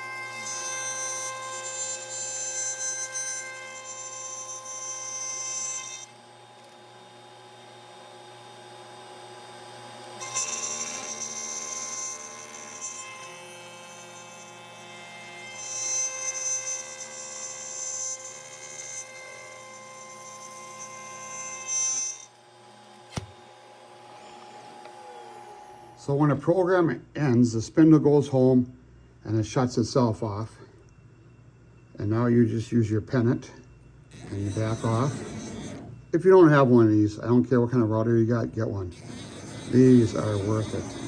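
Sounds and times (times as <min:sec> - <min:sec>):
router spindle whining: 0:00.0 - 0:26.4, 0:33.8 - 0:37.4, 0:38.6 - 0:41.0.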